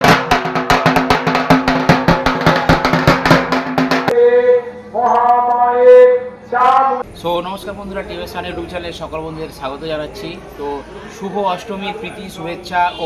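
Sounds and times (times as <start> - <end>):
fast drumming: 0.0 - 4.2
voice holding long notes: 4.1 - 7.0.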